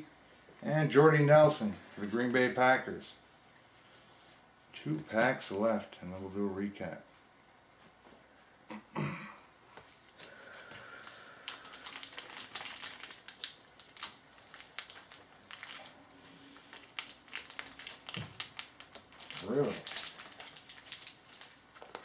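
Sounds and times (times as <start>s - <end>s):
foil wrapper tearing and crinkling: 11.4s - 22.0s.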